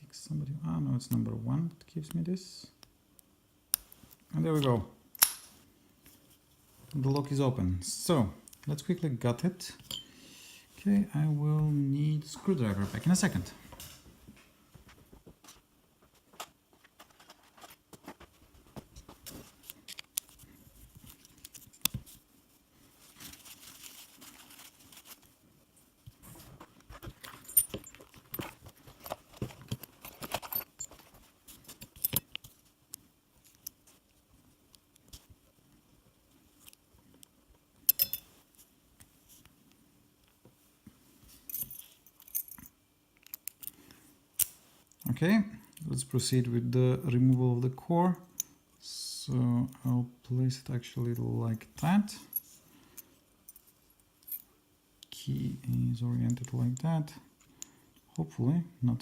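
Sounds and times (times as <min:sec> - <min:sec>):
faint steady hum: 0:00.0 - 0:59.0
padlock and tools clicking: 0:05.1 - 0:05.5, 0:31.7 - 0:32.5
sharp metallic click: 0:05.2 - 0:05.5.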